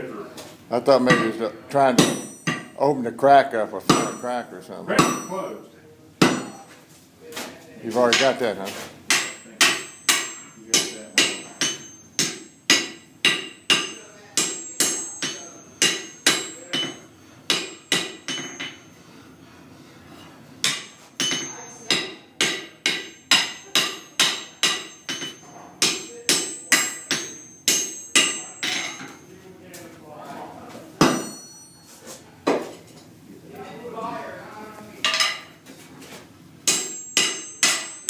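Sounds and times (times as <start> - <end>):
hammer striking iron on anvil: 1.1 - 1.4, 2.0 - 2.8, 3.9 - 5.5, 6.2 - 6.6, 9.1 - 18.8, 20.6 - 29.2, 31.0 - 31.8, 35.0 - 35.5, 36.6 - 38.0.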